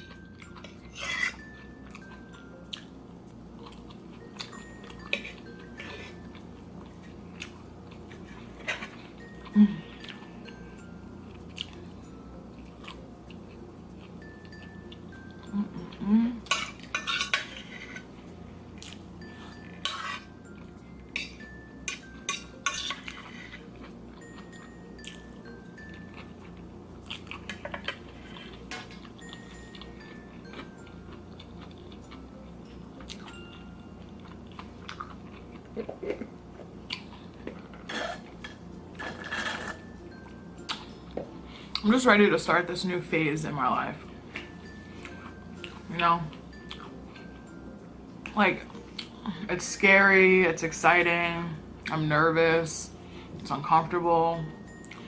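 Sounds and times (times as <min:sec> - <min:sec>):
close chewing: 0:03.6 - 0:05.2, 0:11.4 - 0:11.8, 0:22.6 - 0:24.4, 0:27.0 - 0:29.9, 0:34.0 - 0:39.8
cutlery scraping a dish: 0:16.5 - 0:18.1, 0:19.8 - 0:20.3, 0:22.3 - 0:23.6, 0:37.5 - 0:39.8.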